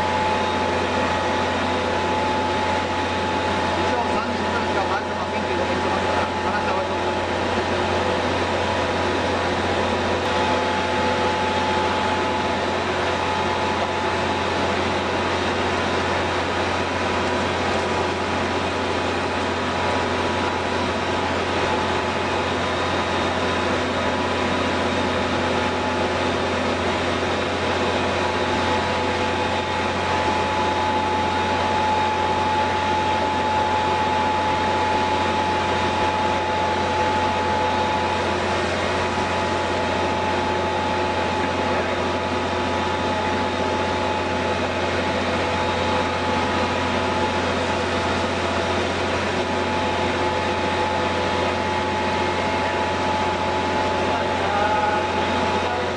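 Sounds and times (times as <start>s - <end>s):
machinery humming: 0.0s - 55.9s
steady whining tones: 0.0s - 55.9s.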